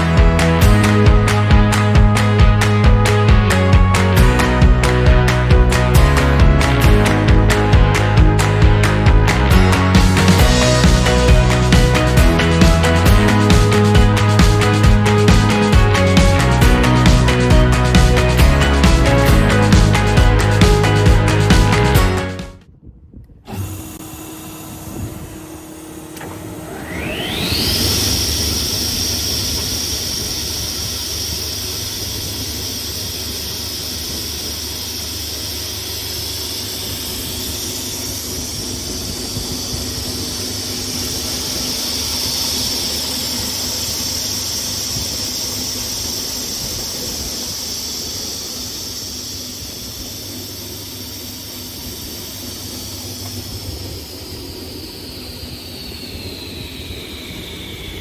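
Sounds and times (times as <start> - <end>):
low motor hum: 0.0 - 58.0
table saw blade whining: 23.5 - 58.0.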